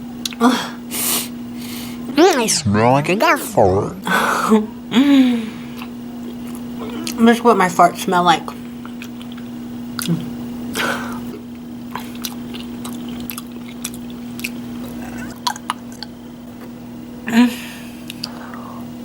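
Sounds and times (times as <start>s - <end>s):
steady low hum: 0.0s - 19.0s
wet squishy chewing: 8.6s - 10.3s, 11.3s - 16.8s.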